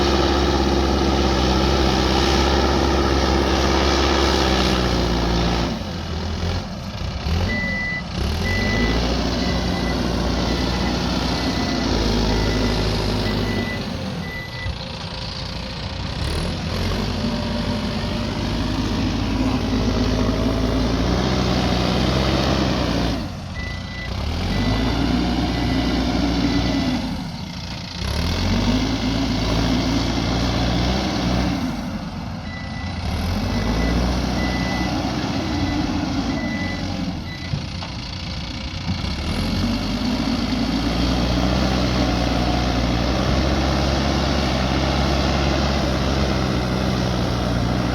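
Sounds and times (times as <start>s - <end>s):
earthmoving machine diesel engine: 0.0s - 47.9s
reversing beeper: 7.4s - 14.8s, 17.3s - 27.2s, 32.4s - 37.6s.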